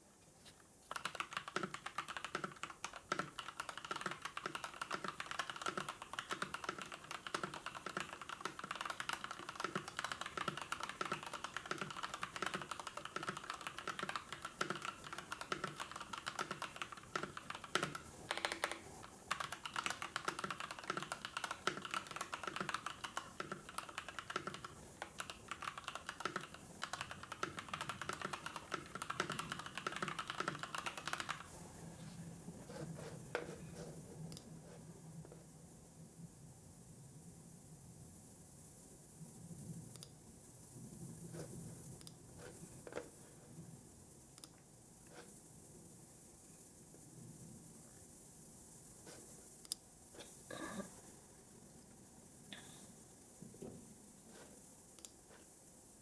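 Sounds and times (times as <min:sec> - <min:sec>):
typing on computer keyboard: 0:00.9 - 0:31.6, 0:32.6 - 0:34.5.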